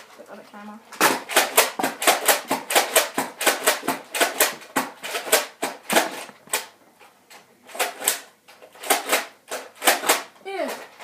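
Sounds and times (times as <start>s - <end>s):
toy blaster firing rapidly: 1.0s - 6.6s, 7.7s - 10.3s.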